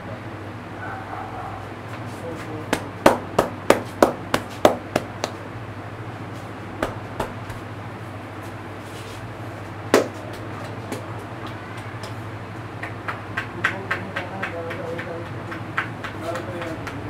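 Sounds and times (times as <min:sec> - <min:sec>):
steady low hum: 0:00.0 - 0:17.0
hands slapping a head: 0:02.7 - 0:05.4, 0:06.8 - 0:07.6, 0:10.0 - 0:12.2.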